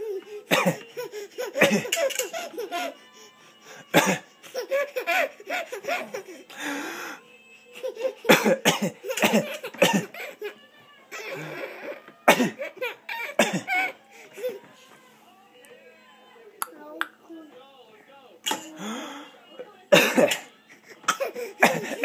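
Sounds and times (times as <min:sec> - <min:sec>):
baby giggling: 0:00.0 - 0:03.0, 0:04.4 - 0:06.4
sharp coughs: 0:00.5 - 0:00.8, 0:01.5 - 0:02.2, 0:04.0 - 0:04.2, 0:08.3 - 0:10.2, 0:12.3 - 0:13.9, 0:19.9 - 0:20.5, 0:21.1 - 0:22.0.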